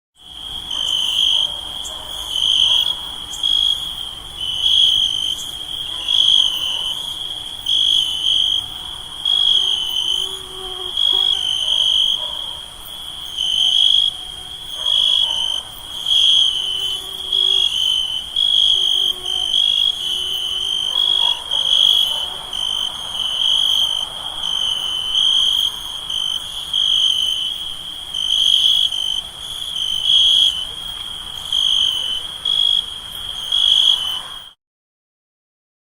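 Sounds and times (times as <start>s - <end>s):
crickets trilling: 0.2s - 34.6s
high insect hum: 0.2s - 34.6s.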